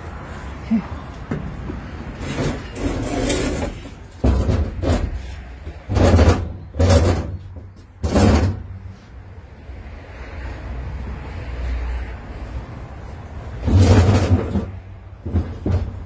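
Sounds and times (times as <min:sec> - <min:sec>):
scraping and rattling: 0:02.1 - 0:08.8, 0:13.5 - 0:16.0.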